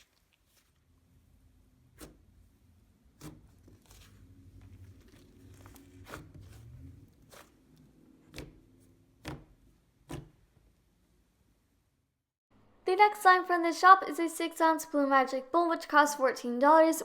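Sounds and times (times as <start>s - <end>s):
slime squished by hand: 0.0s - 1.0s.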